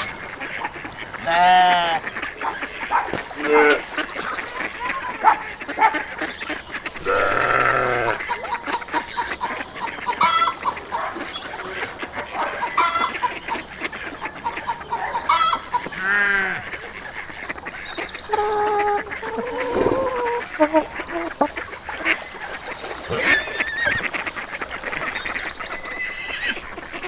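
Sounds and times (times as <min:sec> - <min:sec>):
chickens clucking: 0:00.0 - 0:27.0
geese honking: 0:00.0 - 0:27.0.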